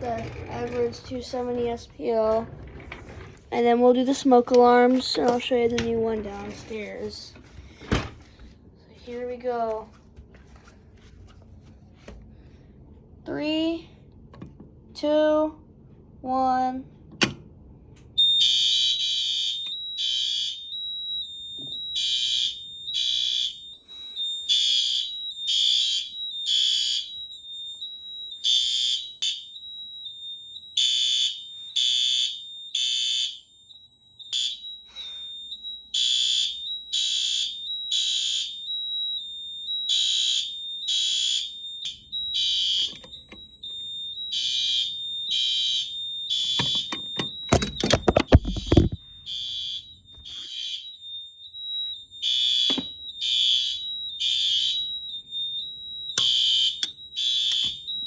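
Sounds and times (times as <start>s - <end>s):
fire alarm horn beeps: 18.2s - 58.0s.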